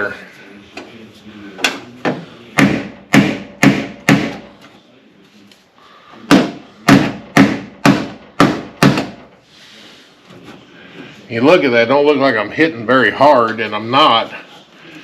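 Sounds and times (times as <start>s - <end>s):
hammer tapping sheet metal: 1.6s - 4.6s, 6.3s - 9.3s.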